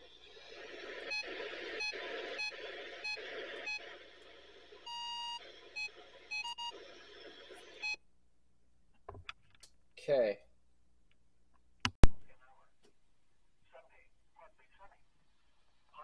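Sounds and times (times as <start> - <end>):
radio static hissing: 0.0 - 8.0
short electronic beeps: 1.1 - 4.0, 4.8 - 6.8, 7.7 - 8.0.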